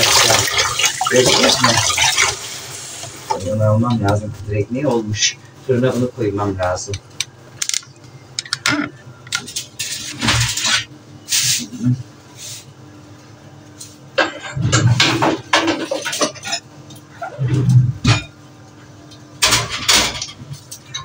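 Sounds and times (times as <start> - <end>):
dishes clattering: 14.2 - 17.2, 19.4 - 21.0.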